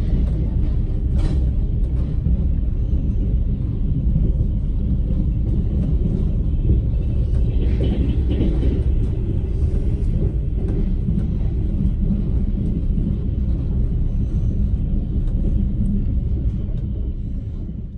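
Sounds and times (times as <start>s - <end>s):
train running on rails: 0.0s - 17.9s.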